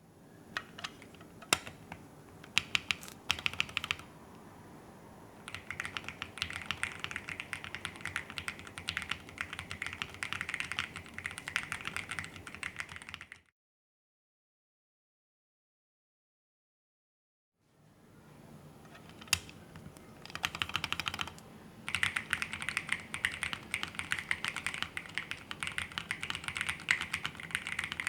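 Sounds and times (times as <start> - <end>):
mechanical keyboard typing: 0.6 - 4.1, 5.4 - 13.4, 19.0 - 19.6, 20.2 - 28.0.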